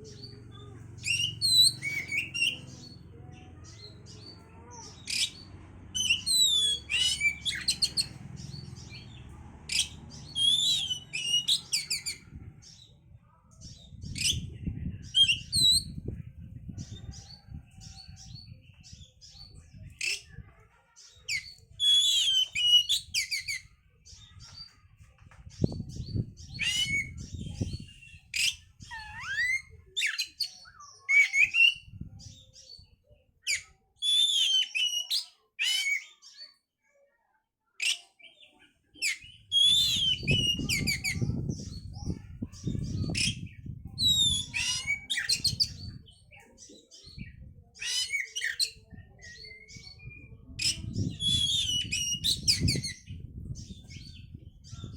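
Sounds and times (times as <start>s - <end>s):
bird singing whistled song: 1.0s - 2.6s, 5.9s - 8.1s, 9.7s - 12.2s, 21.3s - 23.6s, 33.5s - 36.1s, 39.0s - 41.6s, 47.2s - 53.2s.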